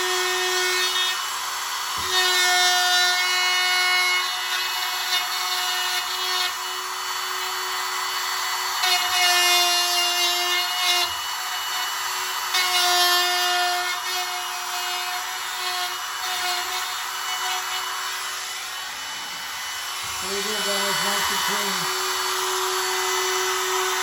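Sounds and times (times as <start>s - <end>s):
router whining cutting wood: 0.0s - 24.0s.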